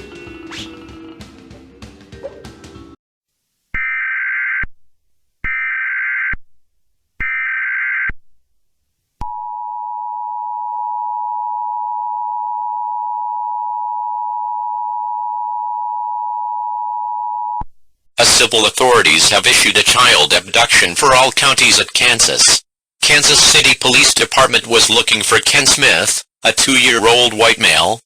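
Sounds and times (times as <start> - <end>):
music: 0.0 - 3.0.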